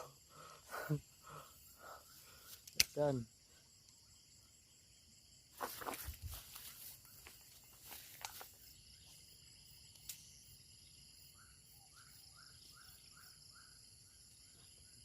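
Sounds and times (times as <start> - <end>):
insects trilling: 0.0 - 15.0
sharp clicks: 2.5 - 3.1.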